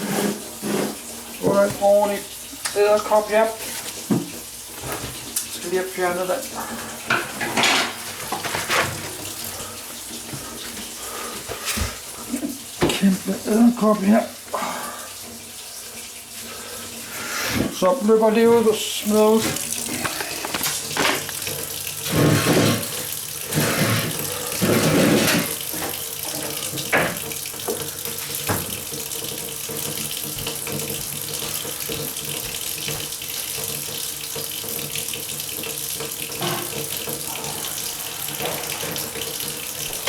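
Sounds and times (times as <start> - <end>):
tap running into sink: 3.8 - 5.6, 18.5 - 40.0
water splashes: 17.4 - 40.0.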